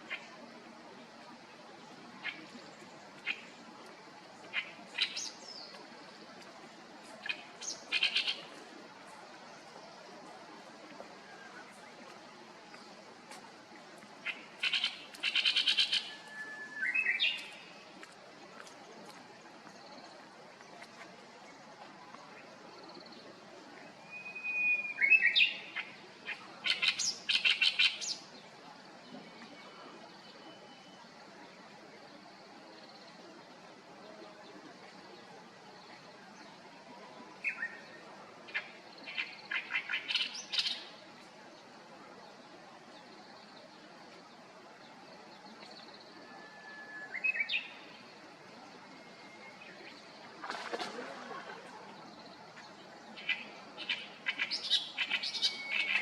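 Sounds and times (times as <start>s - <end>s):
steady background hiss: 0.0s - 56.0s
reed warbler singing: 7.2s - 10.0s, 52.0s - 56.0s
bird whistling call: 15.5s - 17.4s, 24.0s - 25.5s.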